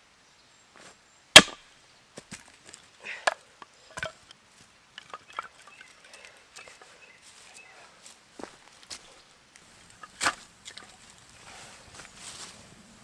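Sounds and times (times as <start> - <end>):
wood splitting knocks and cracks: 1.4 - 1.6
small clicks of wood pieces handled: 2.3 - 6.9.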